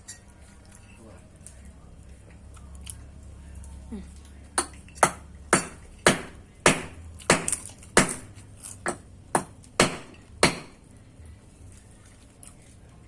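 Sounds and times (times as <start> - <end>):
loud sharp knocks: 4.6 - 8.3, 8.9 - 10.8.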